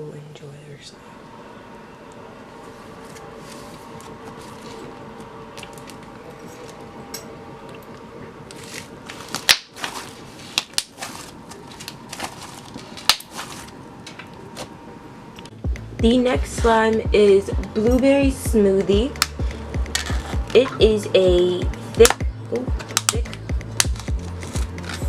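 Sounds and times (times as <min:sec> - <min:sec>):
slime being kneaded by hand: 0:08.5 - 0:13.8.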